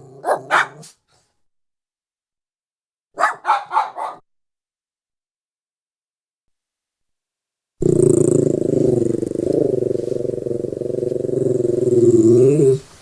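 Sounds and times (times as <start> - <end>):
dog growling: 0.0 - 0.8, 7.8 - 12.9.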